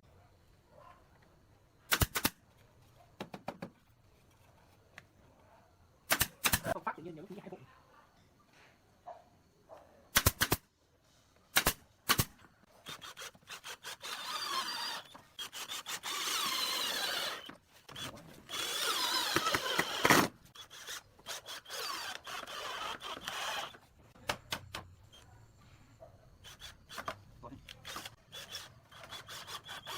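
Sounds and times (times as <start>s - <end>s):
power tool cutting wood: 12.9s - 23.8s.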